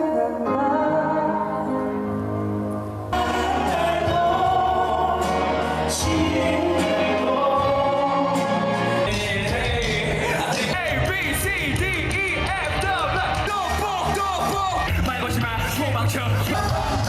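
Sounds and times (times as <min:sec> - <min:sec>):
group singing with accompaniment: 0:03.1 - 0:10.8.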